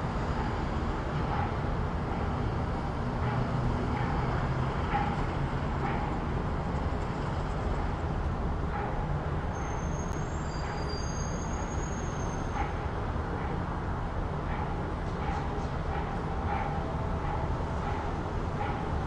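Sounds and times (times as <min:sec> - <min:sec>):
passing vehicles rumble: 0:00.0 - 0:19.0
road traffic: 0:00.0 - 0:19.0
thin high squeal: 0:09.6 - 0:12.6.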